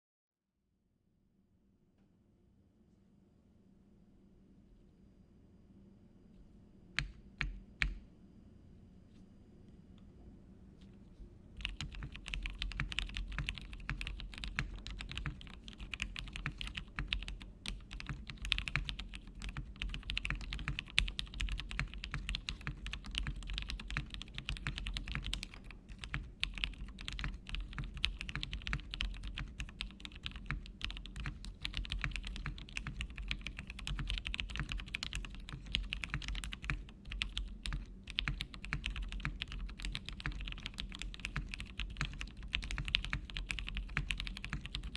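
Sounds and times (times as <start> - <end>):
fast mechanical keyboard typing: 11.6 - 44.9.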